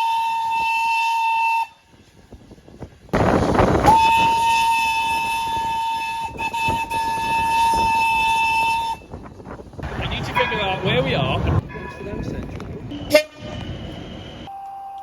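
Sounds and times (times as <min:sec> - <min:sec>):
train horn blast: 0:00.0 - 0:01.8, 0:03.8 - 0:09.0, 0:11.6 - 0:14.4.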